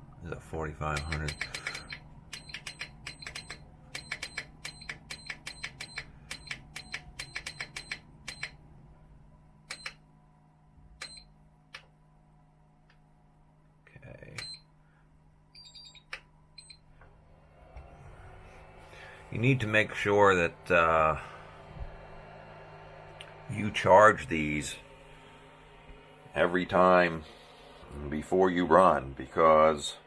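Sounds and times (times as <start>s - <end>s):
battery charger beeping: 1.0s - 8.6s, 15.6s - 16.9s.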